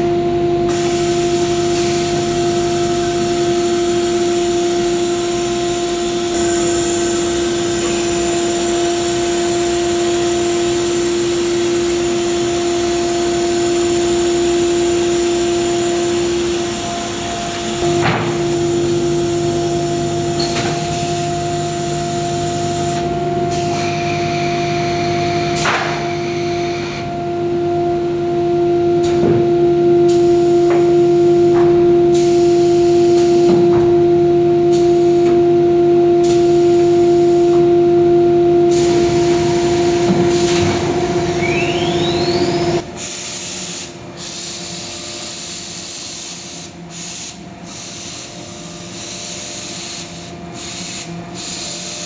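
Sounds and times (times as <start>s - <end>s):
router spindle whine: 2.2s - 28.9s, 38.7s - 42.8s.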